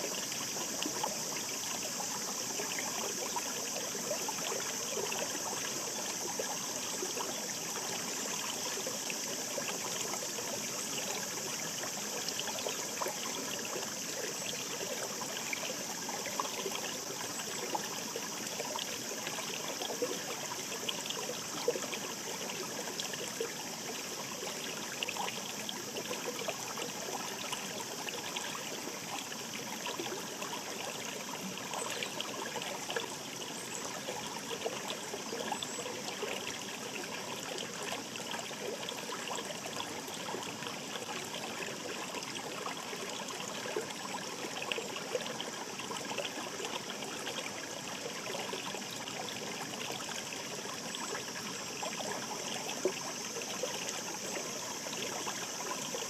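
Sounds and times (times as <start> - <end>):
stream babbling over stones: 0.0 - 56.0.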